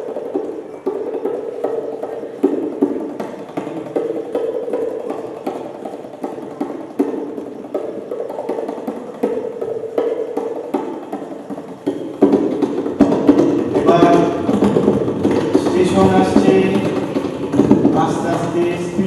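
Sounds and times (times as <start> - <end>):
tabla and hand drums rhythm: 0.0 - 19.0.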